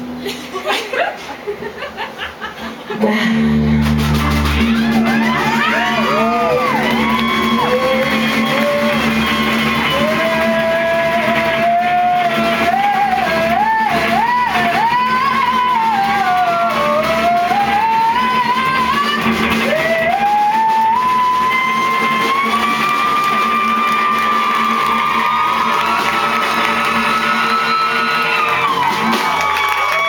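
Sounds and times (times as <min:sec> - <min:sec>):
person singing: 0:03.0 - 0:24.4
guitar accompaniment: 0:03.0 - 0:30.0.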